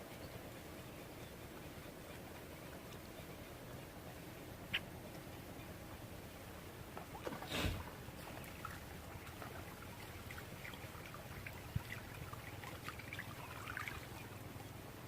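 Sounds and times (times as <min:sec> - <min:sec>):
faint trickling water: 0:00.0 - 0:15.0
water drips and ticks: 0:02.1 - 0:03.9, 0:08.2 - 0:14.4.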